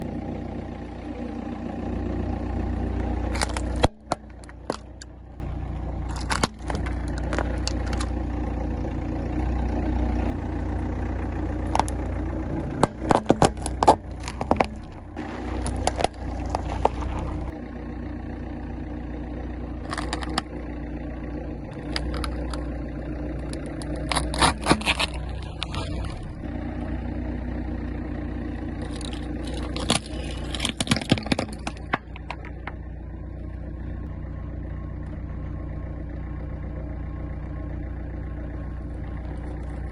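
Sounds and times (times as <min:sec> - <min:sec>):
car engine running: 0:00.0 - 0:39.9
tyres crushing objects: 0:03.2 - 0:05.1, 0:05.9 - 0:08.3, 0:11.6 - 0:17.6, 0:19.8 - 0:20.6, 0:21.8 - 0:22.8, 0:23.4 - 0:26.5, 0:28.8 - 0:32.8.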